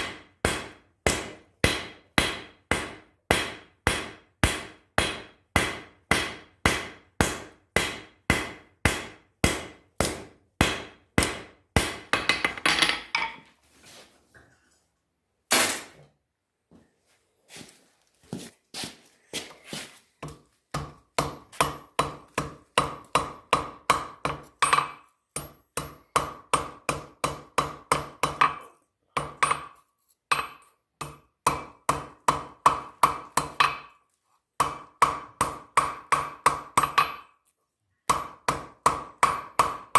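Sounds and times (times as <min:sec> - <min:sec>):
hammer striking steel on anvil: 0:00.0 - 0:12.8, 0:20.8 - 0:34.0.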